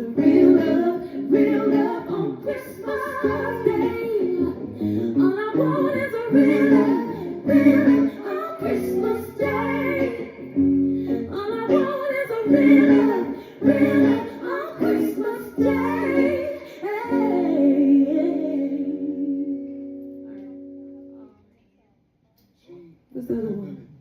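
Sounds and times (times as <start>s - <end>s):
person singing with vibrato: 0.0s - 21.2s.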